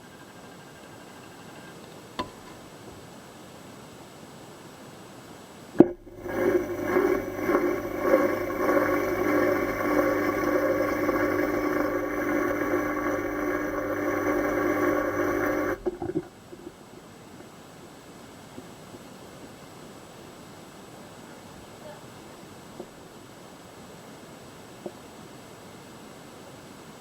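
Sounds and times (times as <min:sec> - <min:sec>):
washing machine humming: 0:05.8 - 0:16.3.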